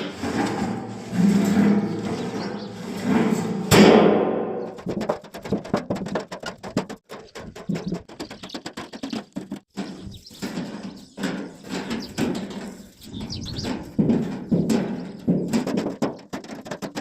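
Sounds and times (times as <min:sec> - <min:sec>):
thud: 0:03.1 - 0:07.0
clicks and knocks: 0:04.7 - 0:17.0.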